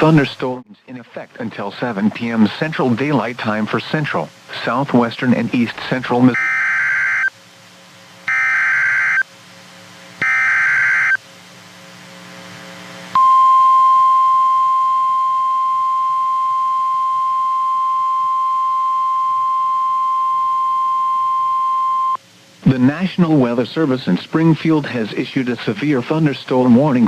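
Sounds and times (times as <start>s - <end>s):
warbling data tones: 6.2s - 7.3s
steady warning alarm tone: 6.3s - 7.3s, 8.3s - 9.2s, 10.2s - 11.2s.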